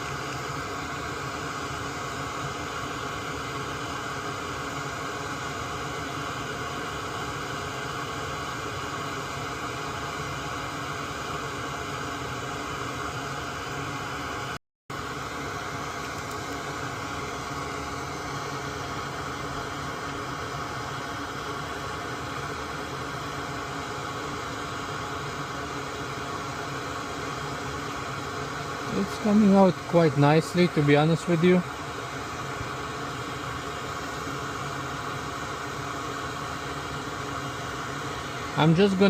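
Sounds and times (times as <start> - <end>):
electric fan whooshing: 0.0 - 39.0.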